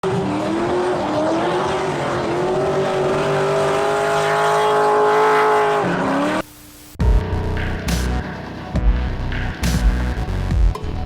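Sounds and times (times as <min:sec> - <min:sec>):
car engine at high revs: 0:00.0 - 0:06.5.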